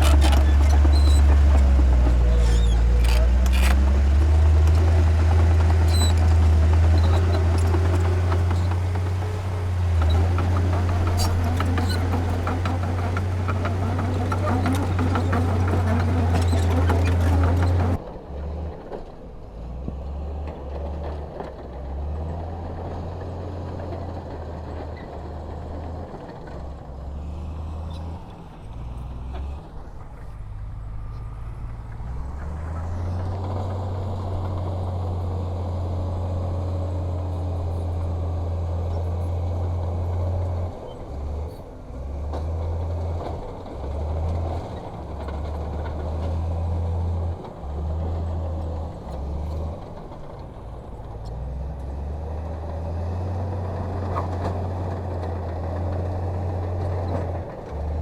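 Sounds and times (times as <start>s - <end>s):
heavy machine diesel engine droning: 0.0s - 18.8s.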